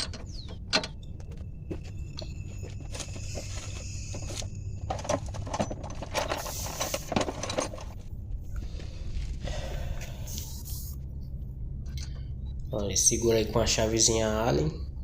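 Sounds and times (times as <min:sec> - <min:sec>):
metal tools clicking and clinking: 0:00.0 - 0:01.4, 0:02.1 - 0:08.0
steady low hum: 0:00.0 - 0:15.0.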